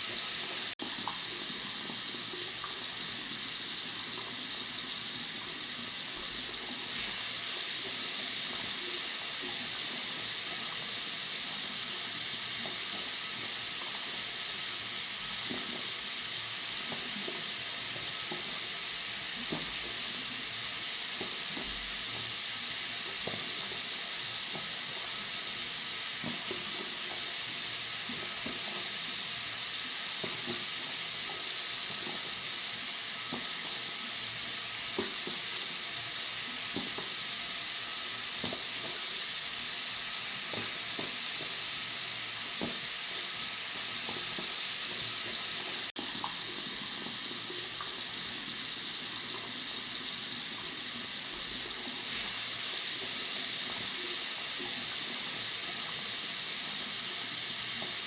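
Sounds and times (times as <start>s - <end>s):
water running from sink tap: 0.0s - 58.0s.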